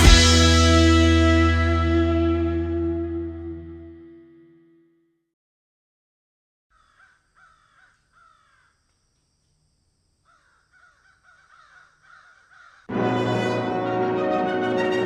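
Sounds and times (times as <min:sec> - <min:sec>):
crows cawing: 0:06.7 - 0:08.8, 0:10.2 - 0:12.9.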